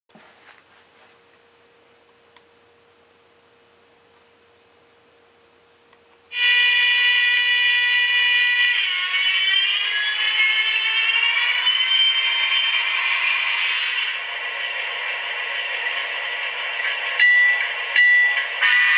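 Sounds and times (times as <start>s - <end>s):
faint steady hum: 0.1s - 8.6s.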